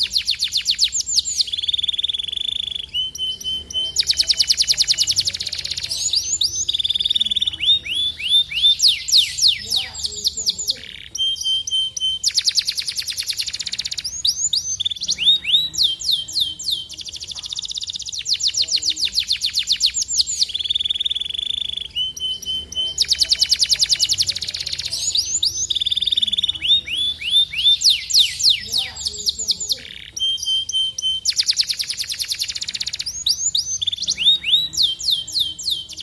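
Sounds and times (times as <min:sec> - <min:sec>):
canary singing: 0:00.0 - 0:36.0.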